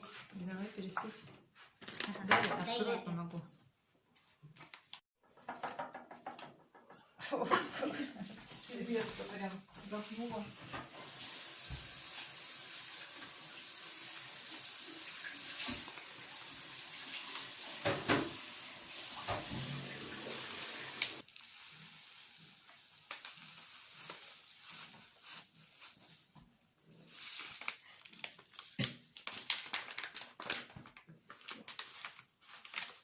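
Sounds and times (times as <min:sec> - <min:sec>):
tap running into sink: 0:17.7 - 0:18.4, 0:19.2 - 0:21.2.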